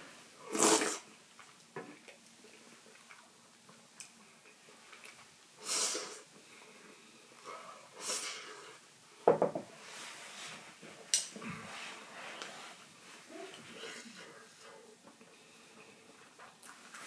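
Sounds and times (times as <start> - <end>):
person slurping: 0.4 - 1.1.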